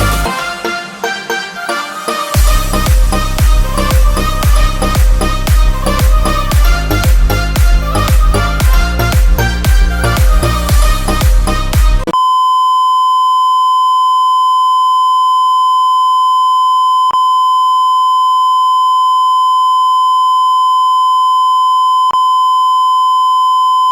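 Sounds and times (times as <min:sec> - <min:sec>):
electronic dance music: 0:00.0 - 0:12.2.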